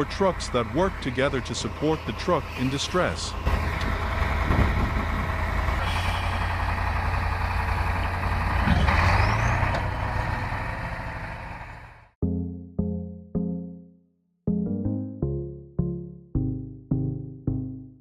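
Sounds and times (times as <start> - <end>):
heavy diesel engines running: 0.0 - 12.2
short rising whine: 1.1 - 7.0
music notes: 12.2 - 18.0.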